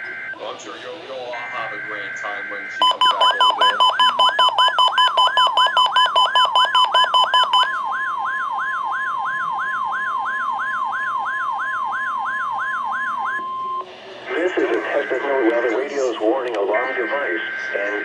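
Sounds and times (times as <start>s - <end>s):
rapid pulsing beep: 2.8s - 7.7s
steady electronic alert tone: 2.8s - 7.7s
rising siren whoop: 3.1s - 13.8s.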